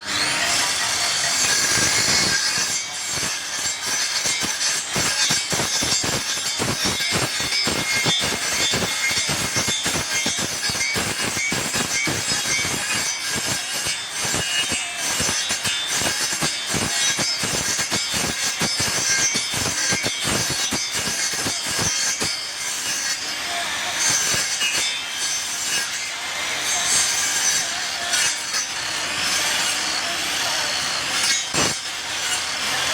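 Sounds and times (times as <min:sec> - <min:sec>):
hand tool scraping wood: 0:11.4 - 0:32.9.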